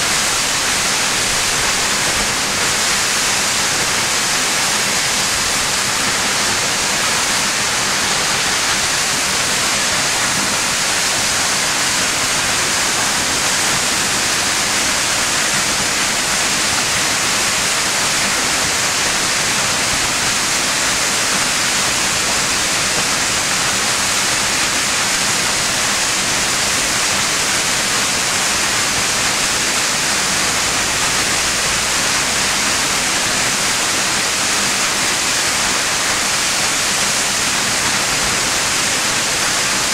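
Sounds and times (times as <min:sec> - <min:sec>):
waterfall crashing: 0:00.0 - 0:39.9.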